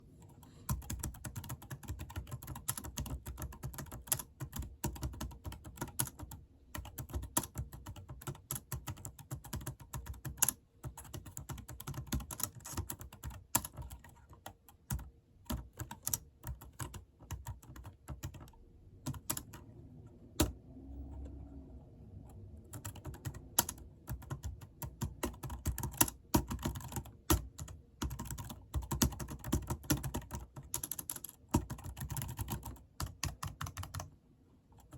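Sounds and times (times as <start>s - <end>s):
keyboard typing clicks: 22.7s - 34.1s.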